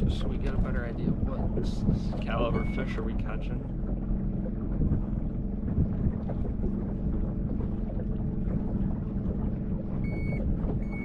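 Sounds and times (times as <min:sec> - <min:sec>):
wind on microphone: 0:00.0 - 0:03.6, 0:04.2 - 0:11.0
boat motor drone: 0:00.0 - 0:11.0
high electronic beep: 0:02.5 - 0:02.8, 0:10.1 - 0:11.0.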